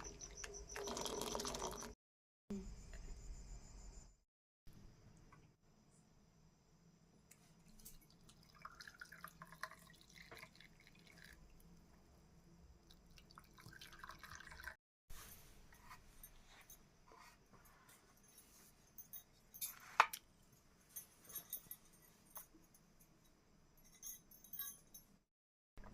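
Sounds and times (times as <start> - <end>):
liquid dripping and trickling: 7.6 - 14.8.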